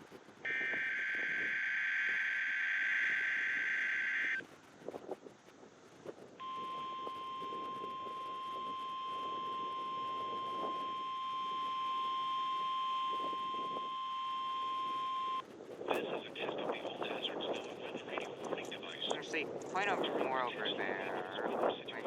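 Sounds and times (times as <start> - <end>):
steady alarm beep: 0.5 - 4.4, 6.4 - 15.4.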